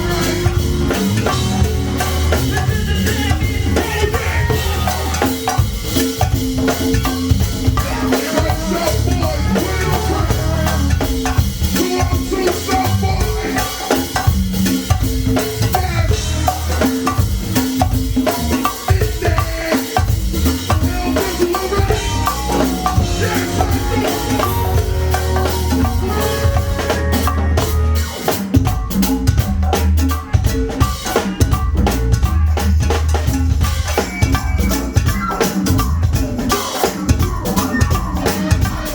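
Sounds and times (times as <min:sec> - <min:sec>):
low bass line: 0:00.0 - 0:05.3, 0:07.3 - 0:13.3, 0:20.7 - 0:28.2
drum kit and percussion groove: 0:00.0 - 0:38.9.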